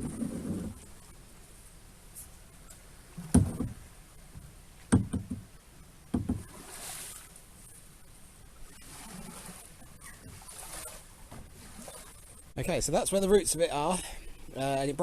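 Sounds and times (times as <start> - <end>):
knocks against boat hull: 3.3 - 3.8, 4.9 - 5.5, 6.1 - 6.5
water washing: 8.6 - 14.9.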